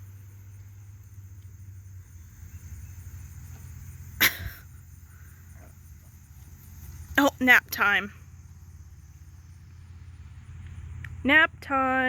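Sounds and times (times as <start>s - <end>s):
crickets chirring: 0.0s - 12.0s.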